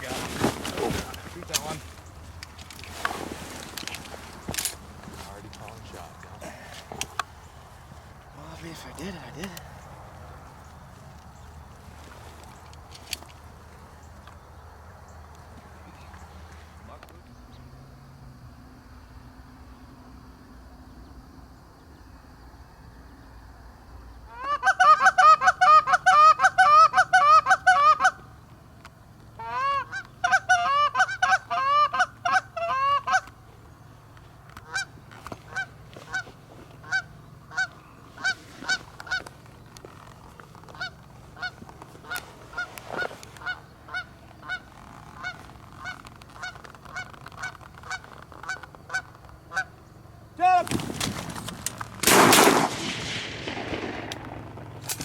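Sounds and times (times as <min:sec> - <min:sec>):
goose honking: 0:24.3 - 0:28.2, 0:29.4 - 0:33.4, 0:34.6 - 0:39.3, 0:40.7 - 0:49.8.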